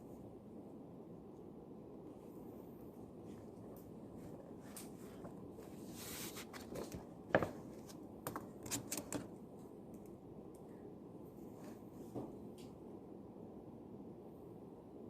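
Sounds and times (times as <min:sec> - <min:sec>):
low room hum: 0:00.0 - 0:15.0
paper rustling: 0:04.2 - 0:09.3
small taps and clicks: 0:08.2 - 0:09.3.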